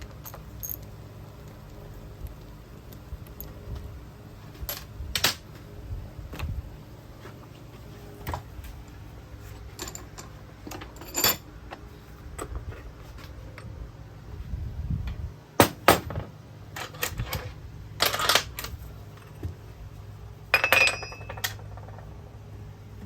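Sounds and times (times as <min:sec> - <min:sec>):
low steady hum: 0:00.0 - 0:23.0
metal tools clinking: 0:00.1 - 0:01.8, 0:09.6 - 0:11.4, 0:20.6 - 0:22.0.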